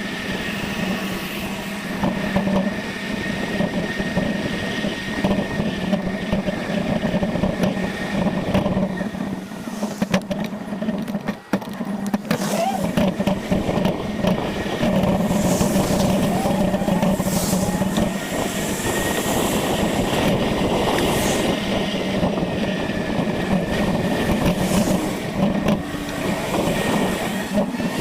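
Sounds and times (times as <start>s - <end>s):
bicycle road and wind noise: 0.0s - 28.0s
swells of hiss: 15.2s - 20.1s.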